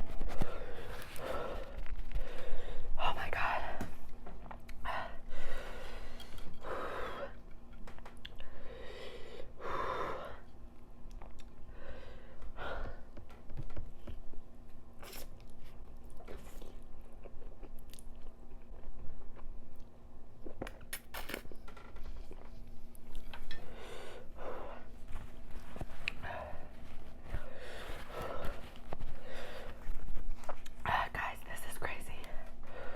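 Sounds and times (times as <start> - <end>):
breathy sounds: 23.5 - 30.2.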